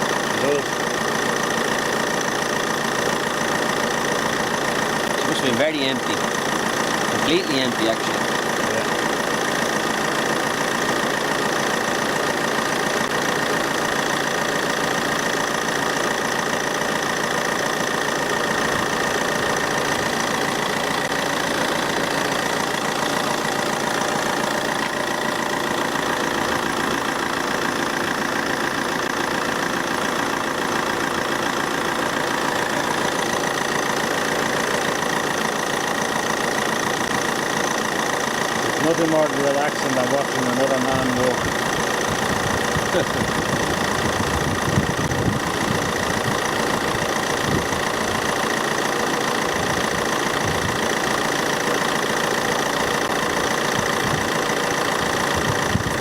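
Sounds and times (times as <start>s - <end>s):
car engine idling: 0.0s - 56.0s.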